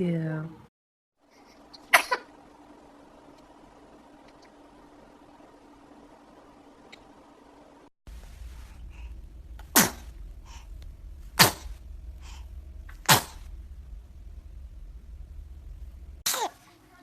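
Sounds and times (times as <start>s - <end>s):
baby sneezing: 9.6s - 10.1s, 11.4s - 11.8s, 13.0s - 13.5s, 16.2s - 16.6s.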